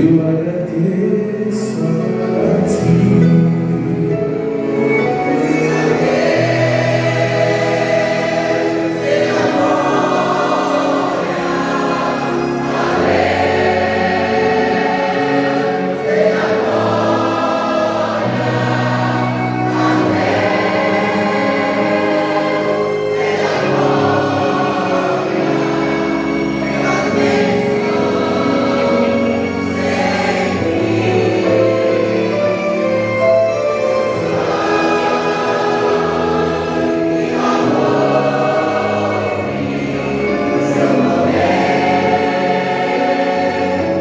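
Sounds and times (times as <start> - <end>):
vocal group singing hymn: 0.0 - 44.0.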